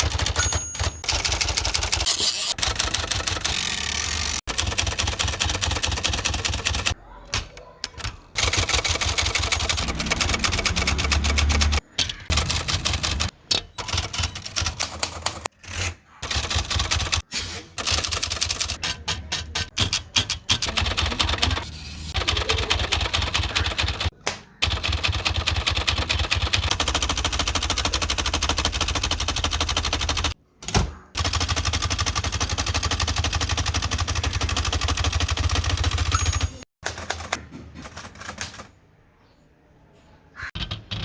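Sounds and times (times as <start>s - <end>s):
typewriter keys clicking: 0.0s - 15.5s, 17.8s - 21.6s.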